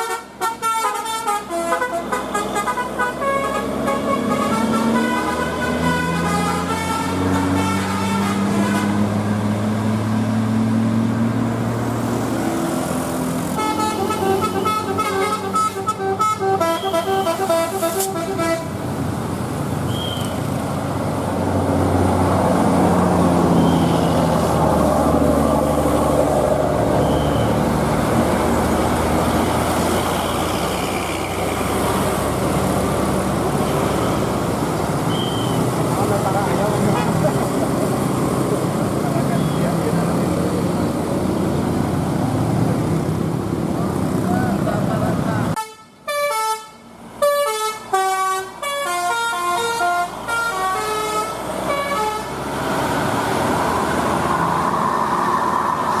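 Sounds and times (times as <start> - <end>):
multi-tone bus horn melody: 0.0 - 9.3, 13.4 - 18.8, 45.5 - 52.5
buses passing: 0.0 - 56.0.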